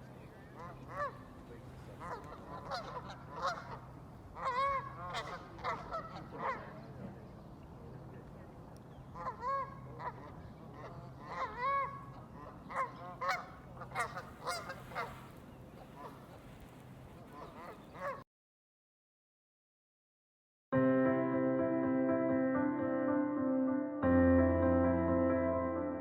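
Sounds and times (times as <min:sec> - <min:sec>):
geese honking: 0:00.6 - 0:06.8, 0:09.2 - 0:15.4, 0:17.3 - 0:18.2.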